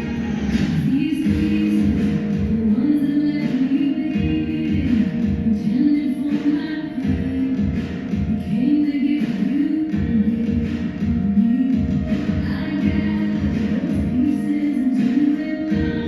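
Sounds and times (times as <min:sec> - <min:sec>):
repeating low beat: 0:00.0 - 0:03.0
song with sung vocals: 0:00.0 - 0:16.0.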